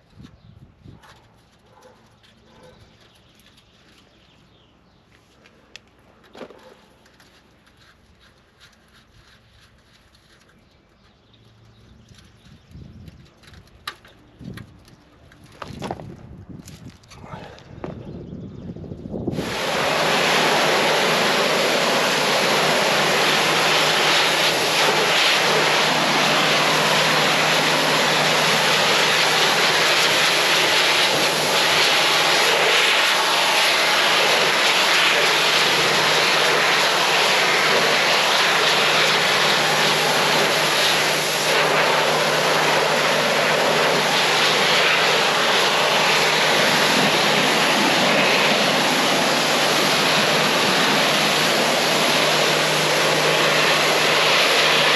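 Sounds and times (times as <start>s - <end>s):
pressure washer blasting water: 19.3s - 54.9s.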